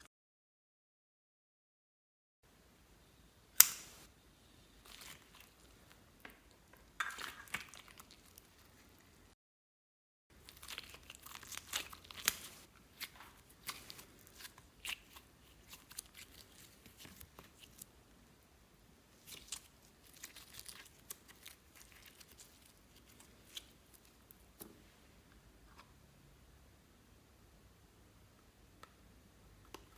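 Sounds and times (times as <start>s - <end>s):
slime squeezed crackling: 4.8s - 6.0s, 7.1s - 9.0s, 10.4s - 17.8s, 19.1s - 24.6s.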